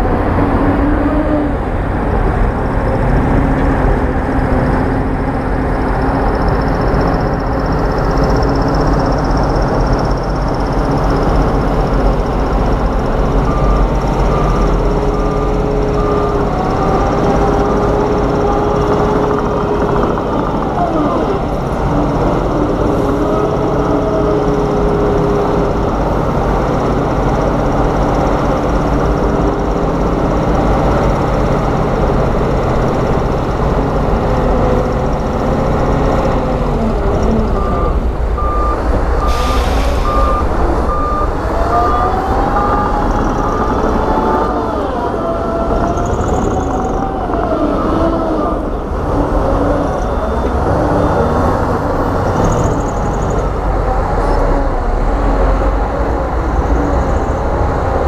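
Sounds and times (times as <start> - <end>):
heavy diesel machinery engine: 0.0 - 58.0
reversing alarm beeping: 6.4 - 22.6, 37.1 - 53.5.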